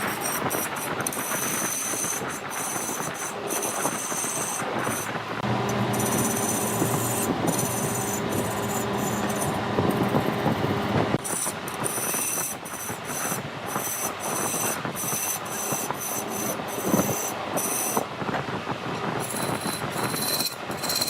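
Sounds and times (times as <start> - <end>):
cutting tool scraping wood: 0.0 - 18.1, 19.0 - 21.0
lathe motor humming: 1.2 - 11.2.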